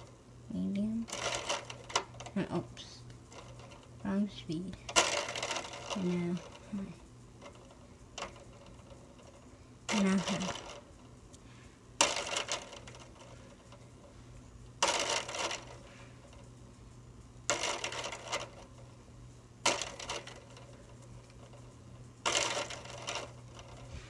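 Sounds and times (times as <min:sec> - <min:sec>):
ceiling fan motor hum: 0:00.0 - 0:24.0.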